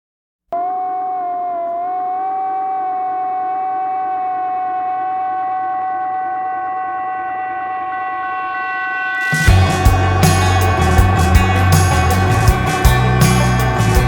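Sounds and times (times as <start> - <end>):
sustained musical drone: 0.6 - 14.0.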